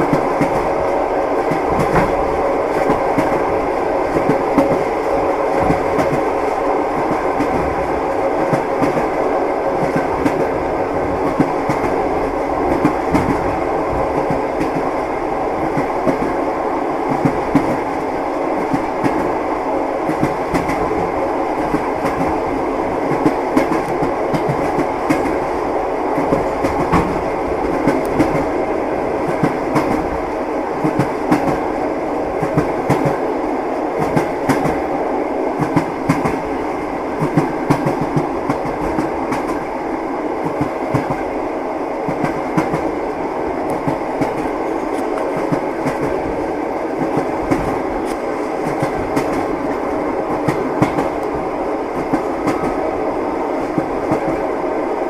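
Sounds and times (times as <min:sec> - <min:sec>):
train running rumble: 0:00.0 - 0:55.0
train wheels clacking: 0:23.0 - 0:25.4, 0:42.1 - 0:43.0, 0:43.7 - 0:46.2, 0:47.0 - 0:52.8.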